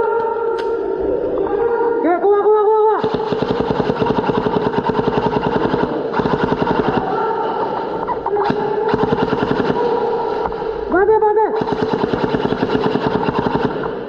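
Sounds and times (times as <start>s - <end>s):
airsoft gun firing full-auto: 3.0s - 10.1s, 11.6s - 14.0s.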